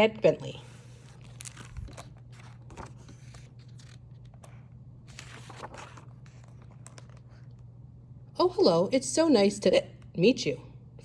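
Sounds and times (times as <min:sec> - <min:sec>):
low electrical hum: 0:00.0 - 0:11.0
book pages rustling: 0:00.3 - 0:07.7.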